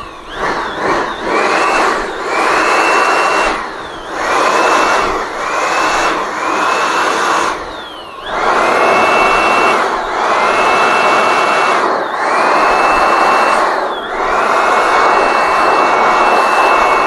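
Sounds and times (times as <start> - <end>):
electric blower running: 0.0 - 17.0.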